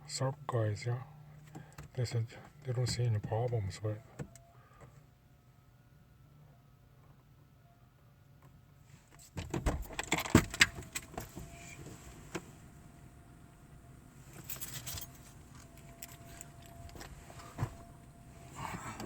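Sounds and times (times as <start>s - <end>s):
faint steady tone: 0.0s - 19.0s
handling noise: 14.1s - 19.0s.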